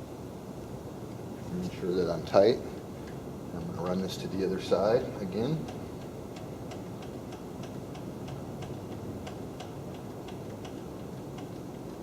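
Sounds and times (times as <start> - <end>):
milling machine low hum: 0.0 - 12.0
light regular clicking: 2.8 - 4.0, 5.2 - 12.0.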